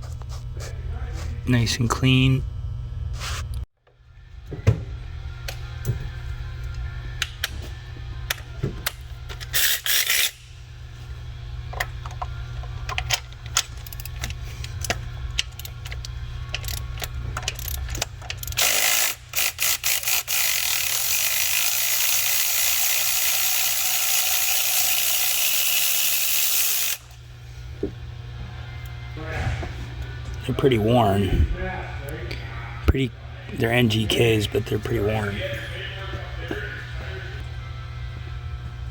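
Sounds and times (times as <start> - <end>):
socket ratchet clicking: 9.3 - 10.4, 12.9 - 27.2.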